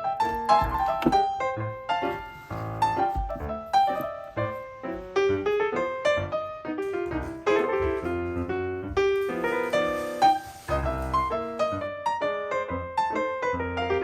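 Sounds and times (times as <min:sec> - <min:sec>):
gentle piano melody: 0:00.0 - 0:14.0.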